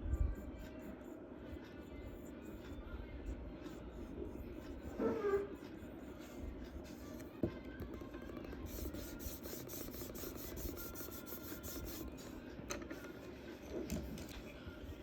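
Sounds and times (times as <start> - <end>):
charcoal scratching on paper: 3.3 - 7.2, 8.6 - 12.2.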